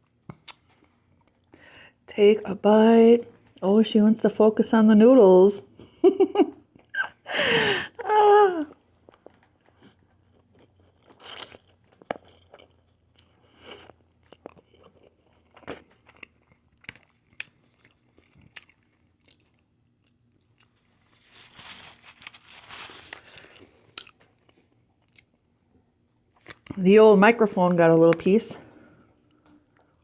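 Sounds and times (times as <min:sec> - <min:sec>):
person chewing noodles: 0:00.0 - 0:01.6, 0:08.9 - 0:25.4.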